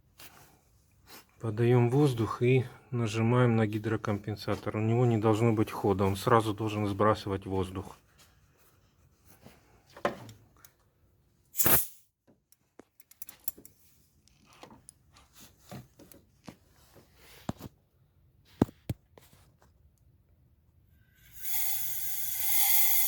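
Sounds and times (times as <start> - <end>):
compressed air hiss: 11.6 - 12.0, 21.2 - 23.0
tools and metal parts clicking: 13.0 - 13.8.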